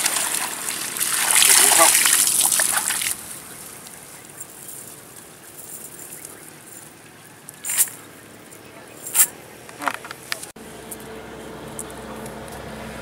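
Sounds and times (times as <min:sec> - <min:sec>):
water splashing and sloshing: 0:00.0 - 0:08.0
open-air background: 0:00.0 - 0:13.0.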